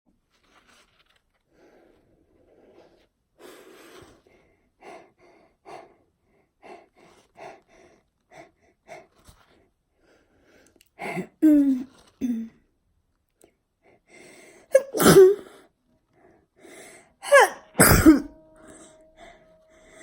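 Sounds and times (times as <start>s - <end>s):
woman gasping breaths: 14.0s - 14.8s, 16.6s - 17.8s.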